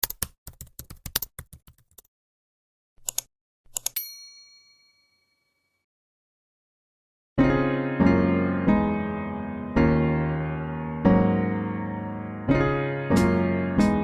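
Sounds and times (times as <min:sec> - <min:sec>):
typing clicks: 0:00.0 - 0:02.1, 0:03.0 - 0:04.0
bell ding: 0:04.0 - 0:05.8.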